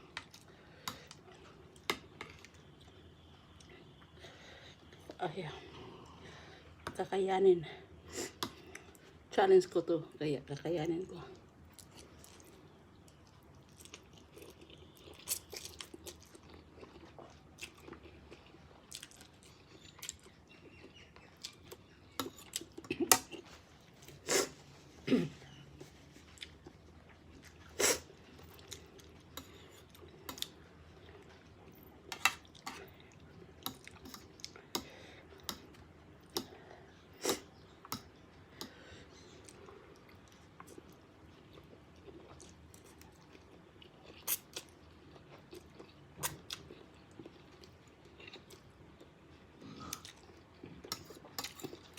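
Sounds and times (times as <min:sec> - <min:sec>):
chewing and smacking: 0:11.7 - 0:23.5.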